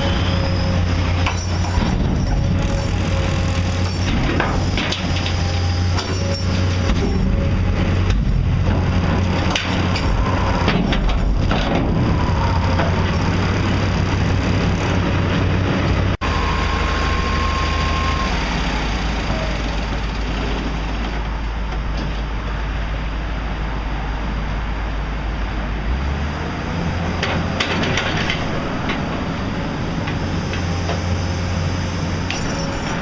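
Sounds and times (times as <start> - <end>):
heavy machinery running: 0.0 - 23.7.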